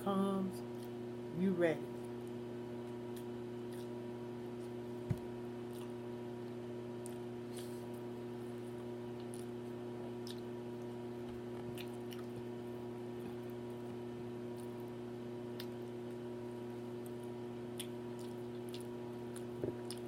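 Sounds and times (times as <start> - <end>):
steady low hum: 0.0 - 20.0
person chewing food: 2.9 - 4.8, 5.6 - 7.9, 8.5 - 16.3, 16.9 - 20.0.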